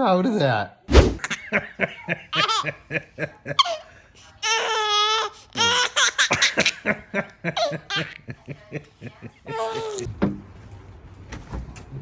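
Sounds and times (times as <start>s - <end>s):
baby laughing: 1.2s - 10.1s
baby squealing: 2.3s - 2.7s, 3.6s - 6.7s, 7.6s - 8.2s, 9.4s - 10.1s.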